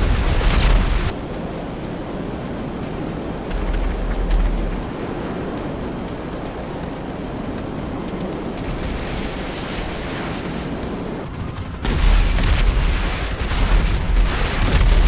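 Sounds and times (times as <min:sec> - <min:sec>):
loud explosion with deep rumble: 0:00.0 - 0:01.1, 0:11.5 - 0:15.0
steady rushing noise: 0:00.0 - 0:15.0.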